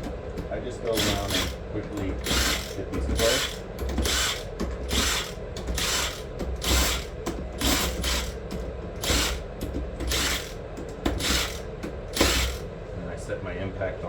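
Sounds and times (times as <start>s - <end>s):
ratchet wrench clicking: 0.9s - 1.6s, 2.2s - 8.4s, 9.0s - 9.4s, 10.1s - 10.6s, 11.2s - 12.6s.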